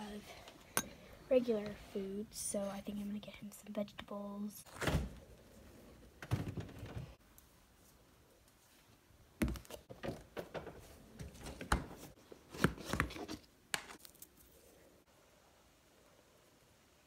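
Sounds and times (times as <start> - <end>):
objects knocking and clattering: 9.4 - 12.0.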